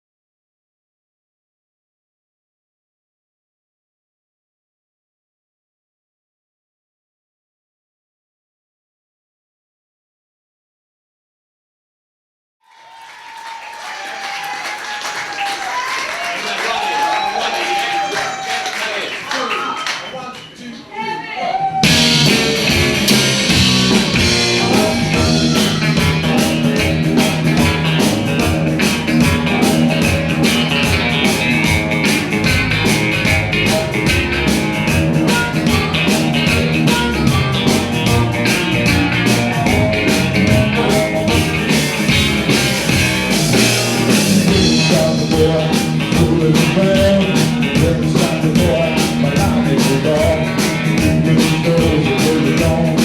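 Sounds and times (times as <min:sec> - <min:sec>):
rock band playing live: 0:21.8 - 0:53.0.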